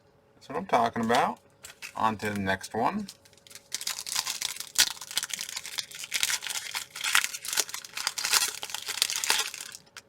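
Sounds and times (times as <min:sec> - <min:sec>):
foil wrapper crinkling and tearing: 0:03.0 - 0:10.0.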